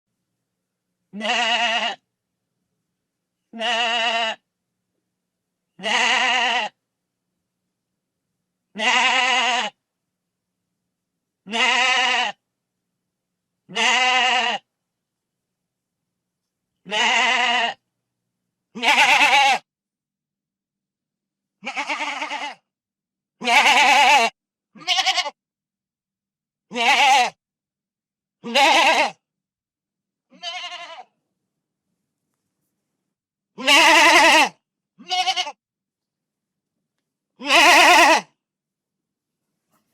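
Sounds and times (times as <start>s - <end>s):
goat bleating: 1.1s - 2.0s, 3.5s - 4.4s, 5.8s - 6.8s, 8.8s - 9.8s, 11.5s - 12.4s, 13.7s - 14.7s, 16.8s - 17.8s, 18.8s - 19.6s, 21.6s - 22.6s, 23.4s - 25.4s, 26.7s - 27.4s, 28.4s - 29.2s, 30.3s - 31.1s, 33.6s - 35.6s, 37.4s - 38.3s.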